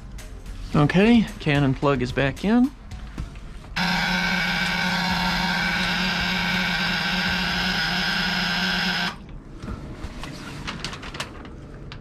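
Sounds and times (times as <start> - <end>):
electric fuel pump buzzing hum: 3.8 - 9.3.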